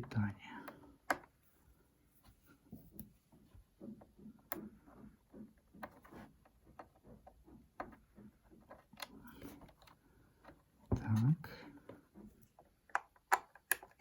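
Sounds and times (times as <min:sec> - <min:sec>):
faint clicks and taps of tools: 0:00.0 - 0:01.5, 0:02.2 - 0:14.0.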